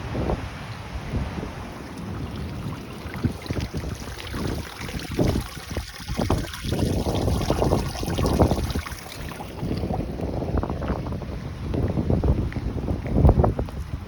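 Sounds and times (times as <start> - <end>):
wind buffeting microphone: 0.0 - 14.0.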